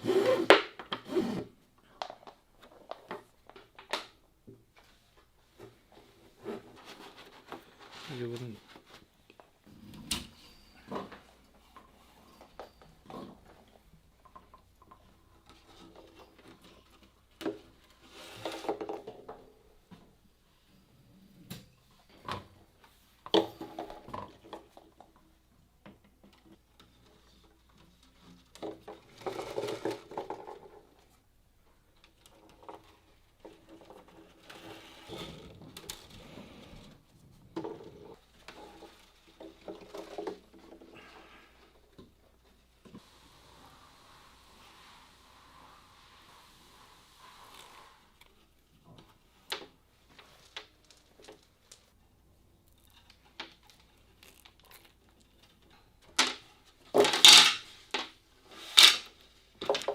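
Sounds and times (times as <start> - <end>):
wooden pieces and tools clattering: 2.0 - 20.2, 22.1 - 42.8, 52.6 - 59.9.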